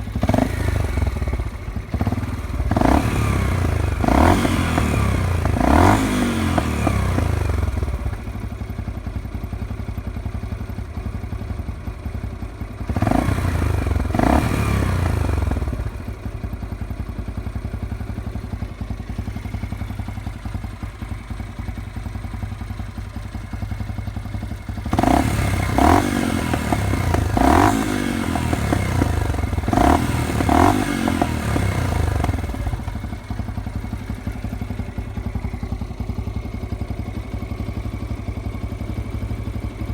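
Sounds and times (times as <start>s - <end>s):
motorcycle engine idling: 0.0s - 39.9s
short throttle revs: 24.9s - 32.9s.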